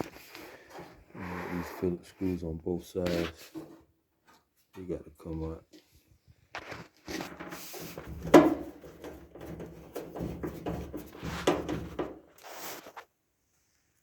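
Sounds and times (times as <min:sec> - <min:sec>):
sheet metal rattling and knocking: 0:07.3 - 0:12.4.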